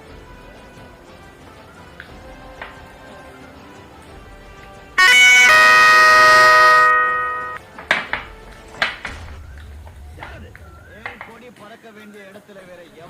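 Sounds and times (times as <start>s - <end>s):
loud horn-like tone: 5.0s - 7.6s.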